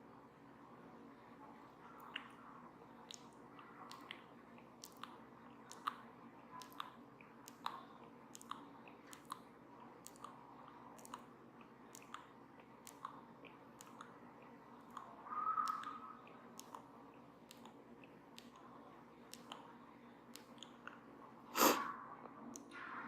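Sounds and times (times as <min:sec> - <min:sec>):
crisp ticks: 0:03.0 - 0:19.7.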